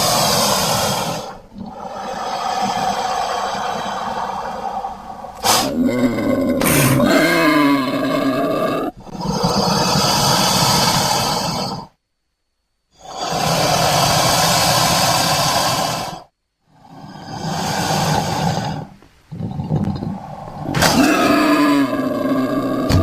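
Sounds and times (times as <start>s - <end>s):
creature roars: 0.0s - 11.9s, 16.8s - 23.0s.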